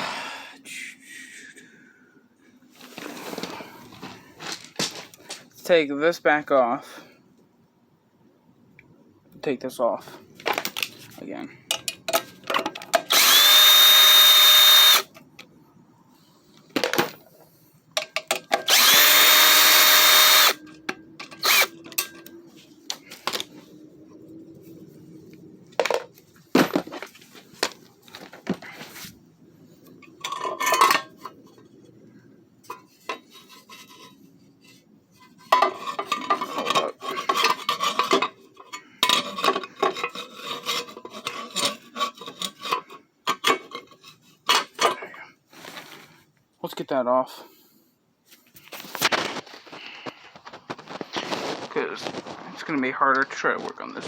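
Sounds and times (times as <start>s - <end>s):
power drill running: 13.1s - 15.1s, 18.7s - 20.6s, 21.4s - 21.8s.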